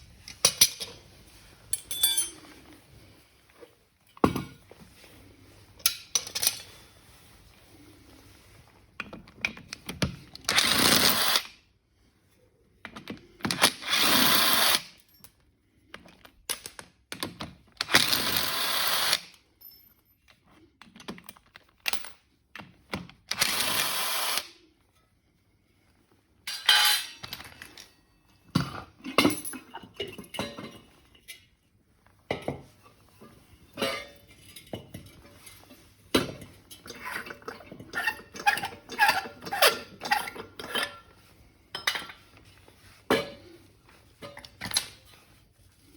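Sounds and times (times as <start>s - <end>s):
metal parts knocking and clinking: 1.7s - 2.4s, 26.5s - 27.9s
power tool bursts: 23.4s - 24.5s.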